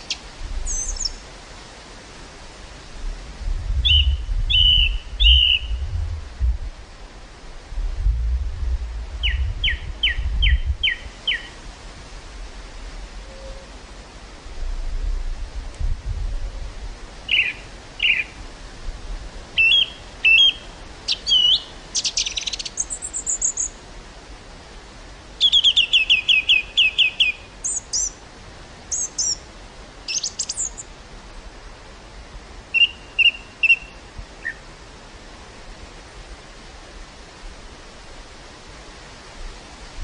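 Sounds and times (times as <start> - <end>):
songbird singing: 0.0 - 1.3, 3.8 - 6.0, 9.2 - 11.6, 13.2 - 13.8, 17.2 - 18.4, 19.6 - 23.8, 25.4 - 28.2, 28.9 - 31.0, 32.7 - 34.7
wind hissing through field: 0.0 - 40.0.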